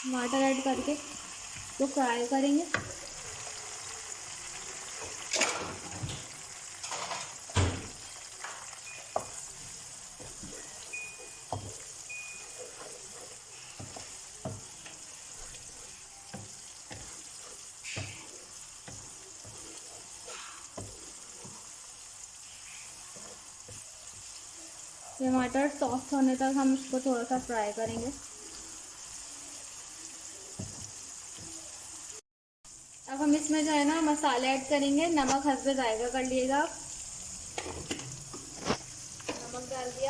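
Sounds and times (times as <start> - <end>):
vegetables sizzling in oil: 0.0 - 40.0
stirring knocks and scrapes: 4.9 - 24.6, 25.2 - 29.1, 30.5 - 31.6.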